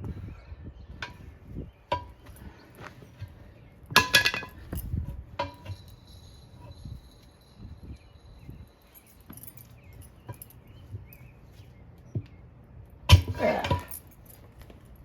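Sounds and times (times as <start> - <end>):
tire irons clanking on wheel rim: 1.0 - 11.2, 13.1 - 14.8.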